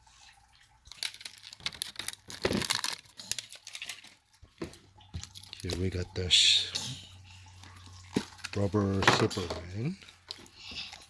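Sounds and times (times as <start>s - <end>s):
packaging crinkling and tearing: 0.8s - 6.0s.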